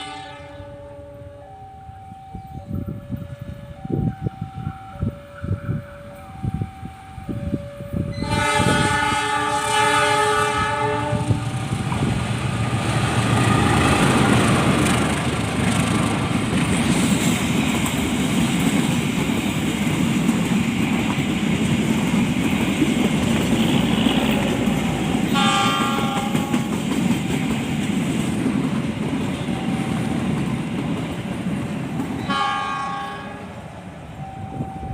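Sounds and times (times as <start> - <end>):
train horn: 0.0 - 11.6, 23.6 - 26.8, 32.2 - 33.6
train rumbling and clattering past: 0.0 - 34.9.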